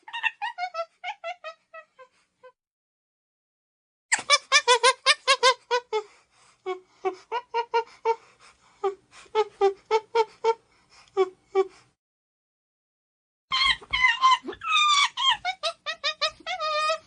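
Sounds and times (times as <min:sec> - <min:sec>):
chimpanzee calling: 0:13.5 - 0:17.0.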